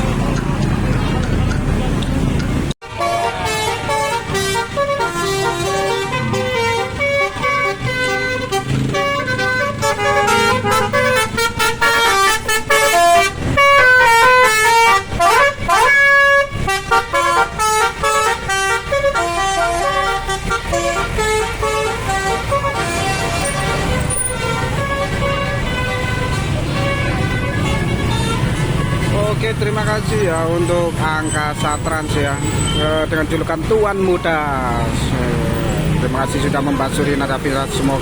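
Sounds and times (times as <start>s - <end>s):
musical bus horn melody: 2.8s - 29.4s.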